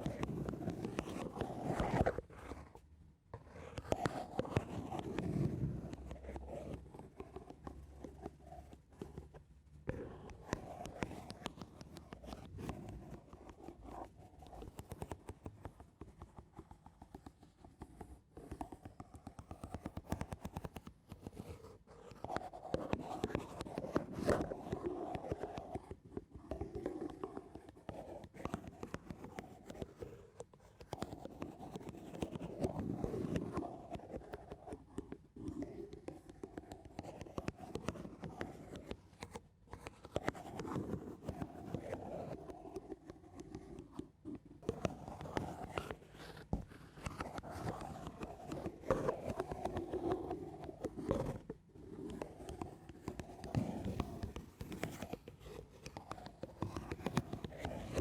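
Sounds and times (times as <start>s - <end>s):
gentle scratching on a surface: 0.0s - 58.0s.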